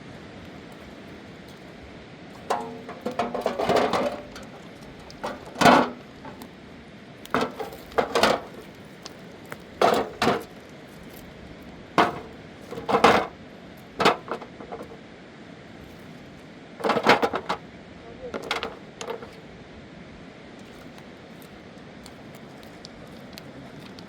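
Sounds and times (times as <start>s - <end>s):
hard objects knocking together: 2.4s - 6.4s, 7.3s - 8.7s, 9.8s - 10.6s, 12.0s - 13.4s, 14.0s - 15.0s, 16.8s - 17.6s, 18.3s - 19.4s.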